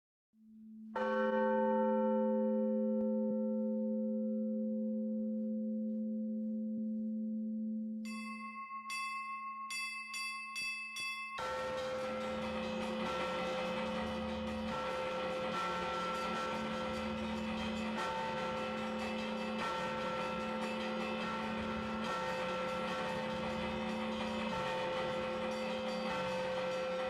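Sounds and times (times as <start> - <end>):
large bell ringing: 8.1 - 27.0
many bells pealing: 8.1 - 27.0
small high bell strikes: 8.1 - 27.0.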